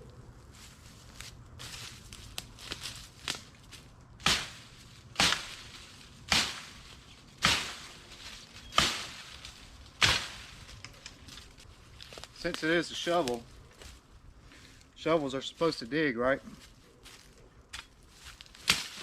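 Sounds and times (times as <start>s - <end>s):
shovel heavy blows: 4.2s - 10.7s.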